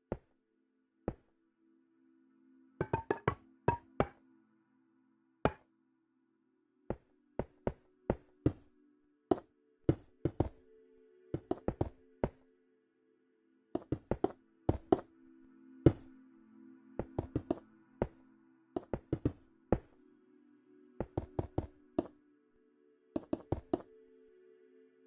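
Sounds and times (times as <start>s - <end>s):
sharp taps on hard object: 2.8s - 4.2s.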